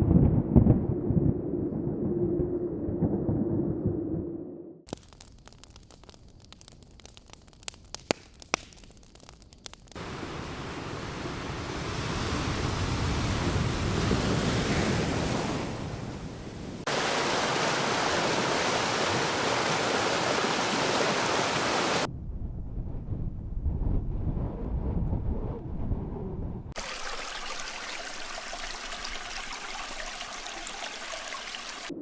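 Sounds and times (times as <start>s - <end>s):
fire crackling and popping: 4.9s - 10.5s
rush of falling water: 10.0s - 22.1s, 26.8s - 31.9s
surf washing in: 10.0s - 22.1s, 26.8s - 31.9s.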